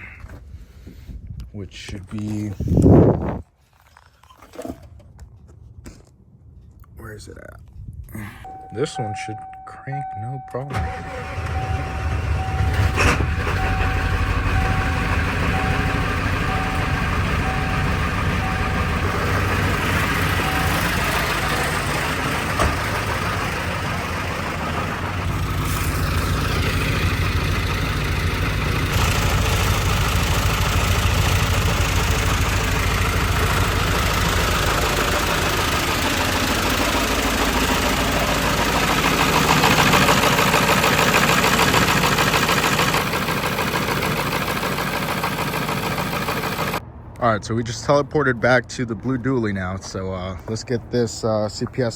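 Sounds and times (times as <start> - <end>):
truck engine running: 10.7 - 46.9.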